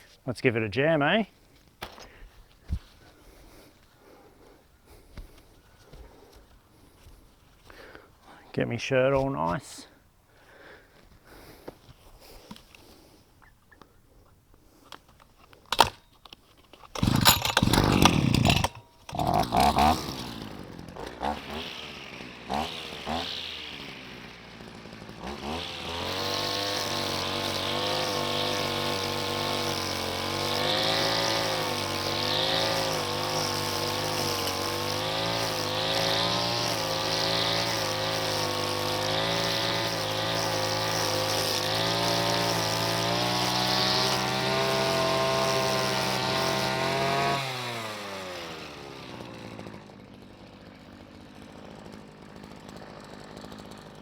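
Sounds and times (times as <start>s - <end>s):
brushcutter engine running: 15.4s - 16.0s, 16.7s - 54.0s.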